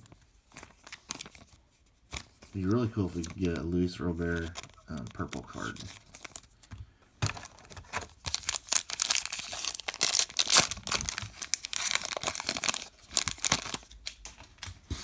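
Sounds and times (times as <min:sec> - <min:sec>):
foil wrapper tearing and crinkling: 0:00.0 - 0:15.0.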